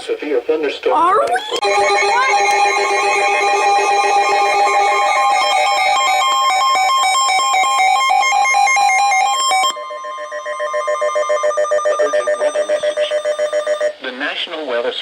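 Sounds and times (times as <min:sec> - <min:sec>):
fast electronic beeping tones: 0:01.3 - 0:14.0
low pulsing electronic tone: 0:01.4 - 0:07.5, 0:09.6 - 0:14.0.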